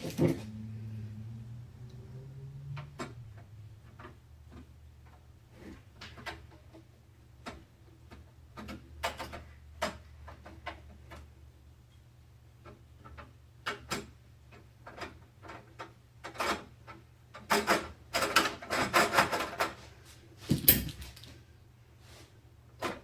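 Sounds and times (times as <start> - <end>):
hands handling computer parts: 0.0 - 0.5, 20.4 - 21.4.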